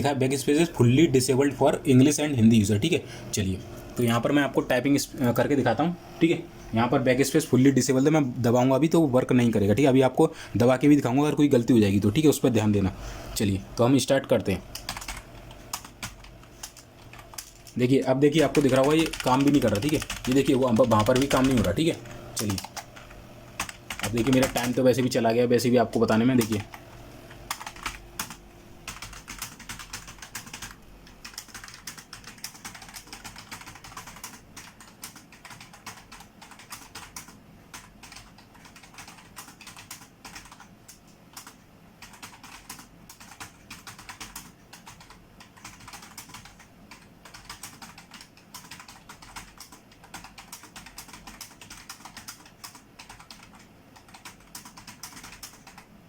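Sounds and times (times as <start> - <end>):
fast keyboard typing: 13.9 - 55.9.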